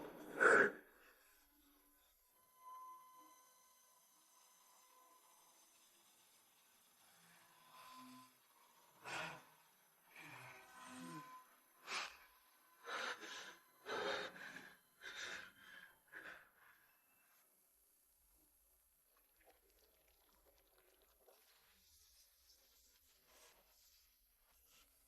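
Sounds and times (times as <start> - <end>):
person breathing hard: 0.0 - 1.3, 9.0 - 17.1.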